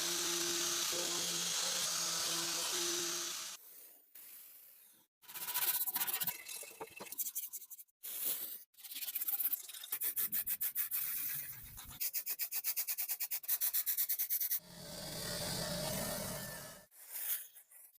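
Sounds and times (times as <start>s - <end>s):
hand sanding strokes: 0.0s - 3.6s.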